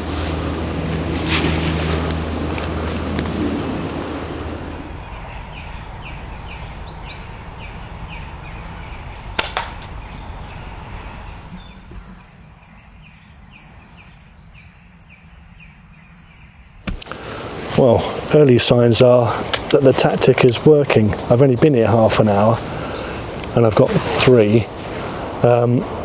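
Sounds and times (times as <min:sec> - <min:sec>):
wind gust: 0:00.0 - 0:13.6, 0:17.0 - 0:21.5
small birds trilling: 0:00.0 - 0:26.0
pellet striking target: 0:09.4 - 0:10.1
air rifle shot: 0:09.4 - 0:10.2.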